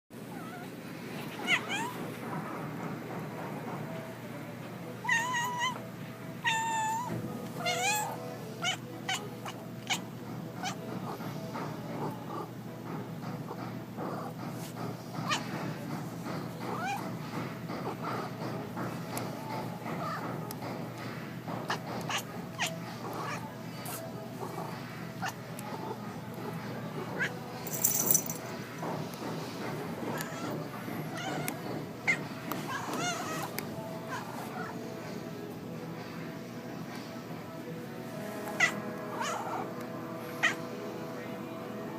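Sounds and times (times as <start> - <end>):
cat meowing: 1.3 - 2.0, 5.0 - 5.8, 6.4 - 10.0, 30.1 - 34.7.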